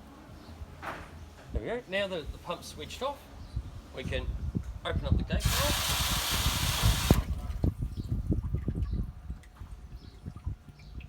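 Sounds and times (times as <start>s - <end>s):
water splashing from valve: 5.4s - 8.6s.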